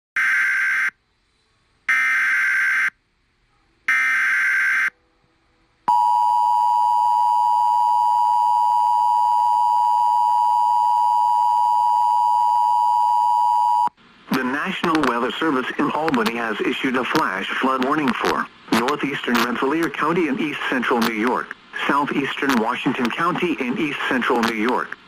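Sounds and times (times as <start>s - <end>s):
steady alarm tone: 3.9s - 4.9s, 5.9s - 14.6s.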